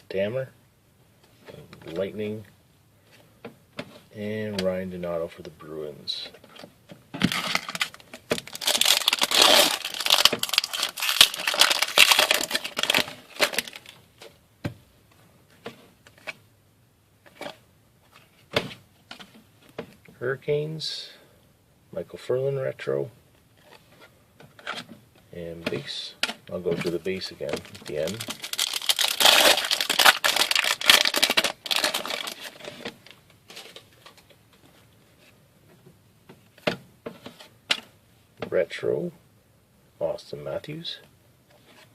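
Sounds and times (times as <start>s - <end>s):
wrapper tearing and crumpling: 7.3s - 14.0s, 27.6s - 32.9s.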